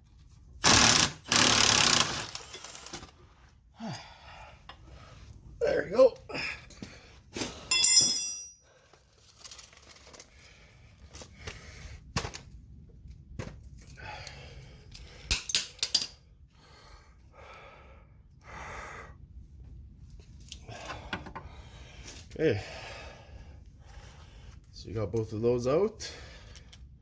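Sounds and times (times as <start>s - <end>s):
metal tools and parts clanking: 7.7s - 8.6s.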